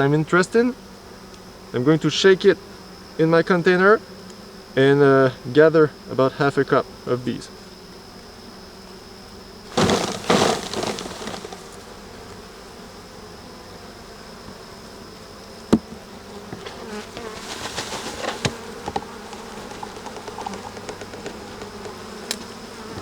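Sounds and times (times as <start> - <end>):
bees buzzing: 0.0 - 23.0
loud knocks on a container: 9.7 - 11.6, 15.7 - 16.0
rustling and tapping: 9.7 - 11.9, 15.7 - 23.0.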